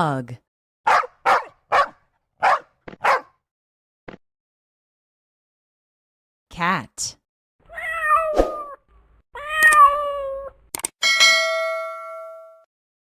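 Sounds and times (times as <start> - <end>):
cat meowing: 7.7 - 8.8, 9.4 - 10.6
metallic ding ringing: 11.0 - 12.5.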